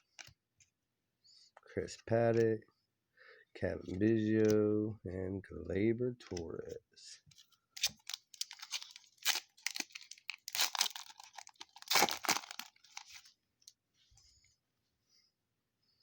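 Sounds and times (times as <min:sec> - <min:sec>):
foil wrapper tearing and crinkling: 0:07.8 - 0:13.3.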